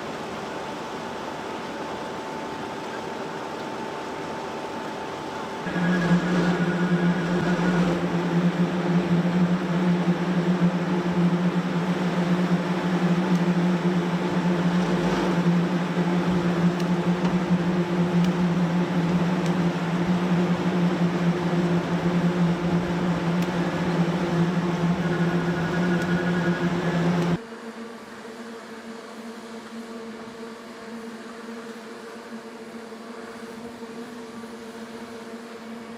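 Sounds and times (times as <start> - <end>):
heavy machine engine drone: 0.0 - 27.4.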